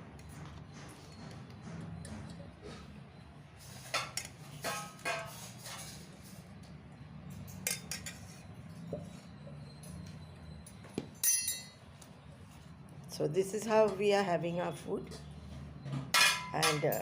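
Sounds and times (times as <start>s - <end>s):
cutlery and dishes clinking: 3.6s - 6.4s, 7.3s - 8.5s, 11.2s - 11.8s, 16.0s - 17.0s.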